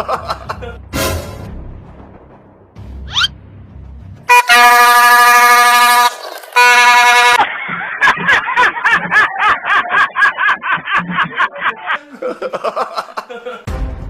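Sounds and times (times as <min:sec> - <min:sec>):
air horn blast: 0:04.3 - 0:07.4.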